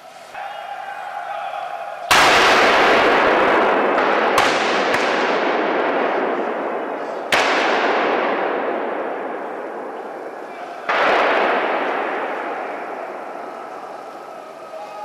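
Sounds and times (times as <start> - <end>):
rifle shots with rolling echo: 0.6 - 14.4
distant gunshot cracks: 2.1 - 10.3, 10.9 - 13.4.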